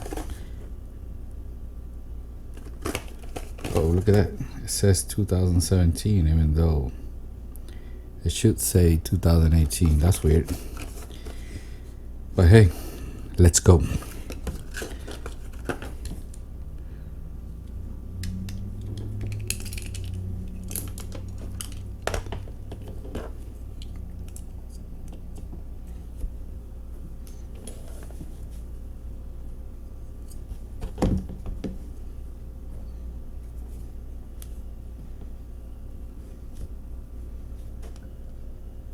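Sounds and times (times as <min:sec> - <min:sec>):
small clicks of toy car parts: 0:18.2 - 0:22.4.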